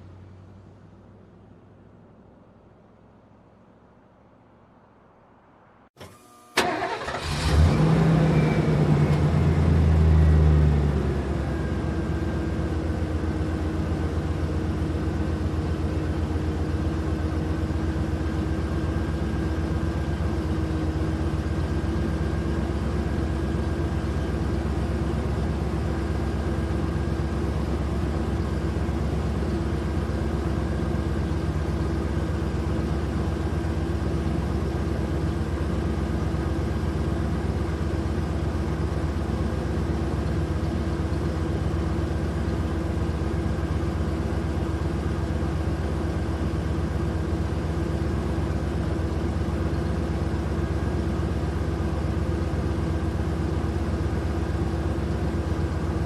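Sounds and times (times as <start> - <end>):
vehicle engine starting and revving: 6.0 - 11.1.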